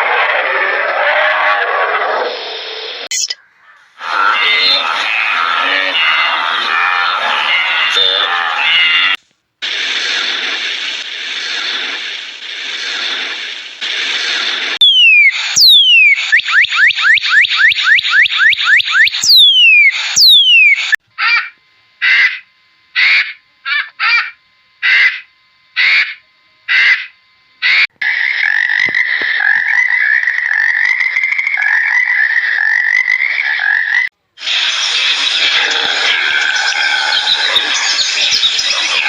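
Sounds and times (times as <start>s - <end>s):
continuous trill: 0.0s - 39.0s
animal calls: 3.1s - 9.2s, 21.2s - 34.1s.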